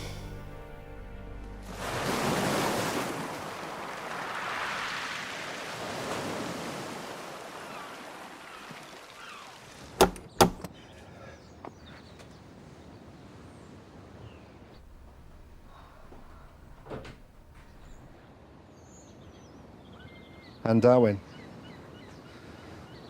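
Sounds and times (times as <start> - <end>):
sea waves washing in: 1.7 - 10.0
sharp knocks: 14.8 - 18.2.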